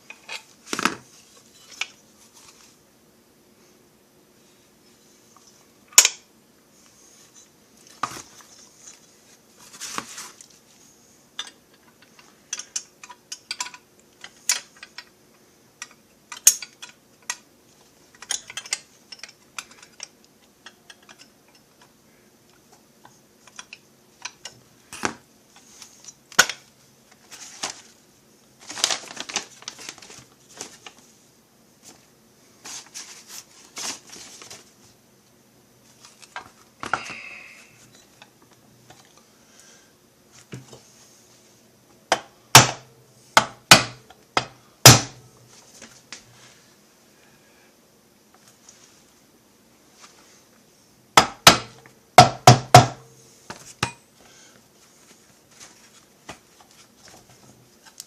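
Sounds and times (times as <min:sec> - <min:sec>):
metal parts clicking and knocking: 0:11.4 - 0:15.1, 0:15.8 - 0:17.4, 0:18.1 - 0:21.9, 0:23.4 - 0:25.1.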